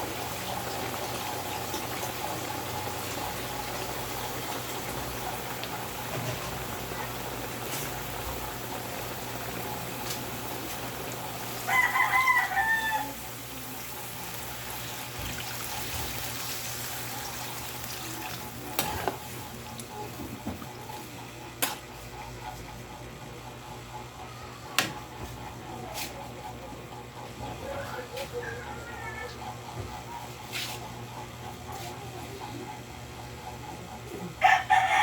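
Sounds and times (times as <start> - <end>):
rooster crowing: 11.6 - 13.3, 34.4 - 35.0.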